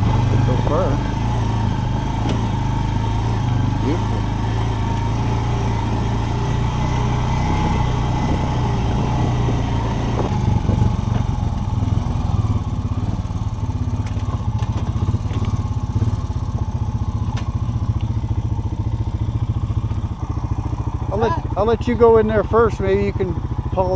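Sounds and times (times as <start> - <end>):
off-road vehicle engine: 0.0 - 23.9
rattling and knocks: 7.5 - 11.7, 13.8 - 16.2.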